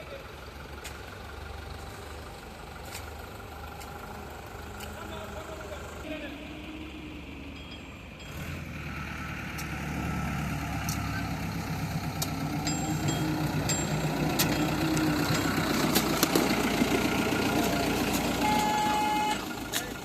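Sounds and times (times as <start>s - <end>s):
diesel engine running: 0.0s - 20.0s.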